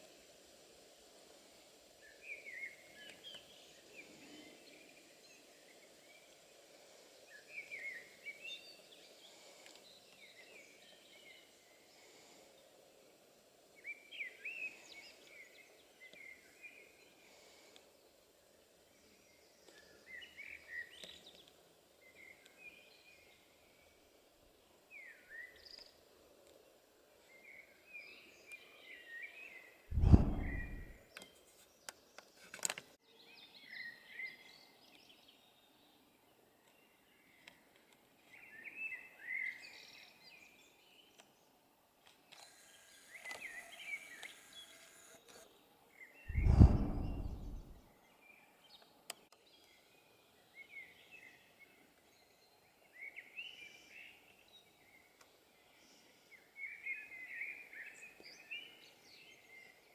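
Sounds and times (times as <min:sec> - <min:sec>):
faint outdoor hiss: 0:00.0 - 0:15.7
loud low thump: 0:29.9 - 0:30.9, 0:46.3 - 0:47.8.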